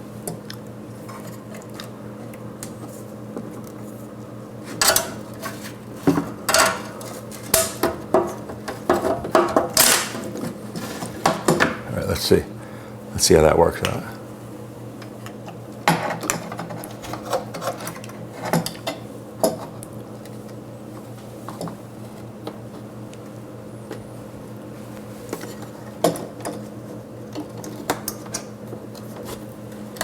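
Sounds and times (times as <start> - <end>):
steady low hum: 0.0 - 15.8.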